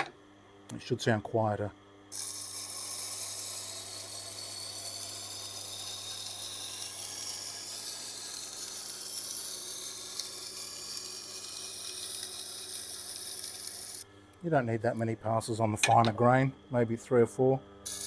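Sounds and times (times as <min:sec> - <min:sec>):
knife grinding hiss: 0:02.1 - 0:14.0.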